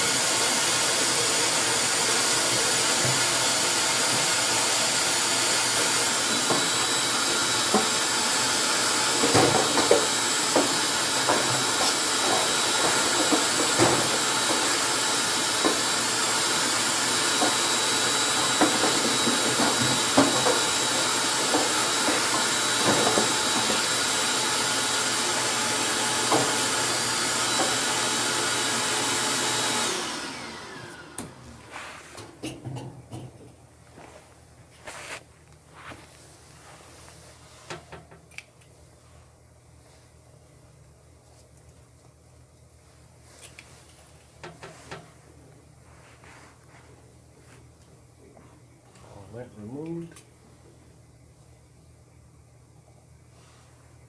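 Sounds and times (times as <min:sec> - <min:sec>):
vacuum cleaner running: 0:00.0 - 0:38.0.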